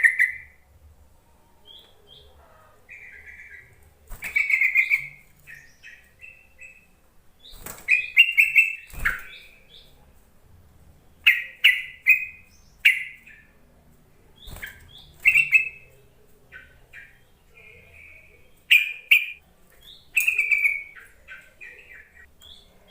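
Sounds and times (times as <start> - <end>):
bird chirping in bubbly phrases: 4.3 - 9.8.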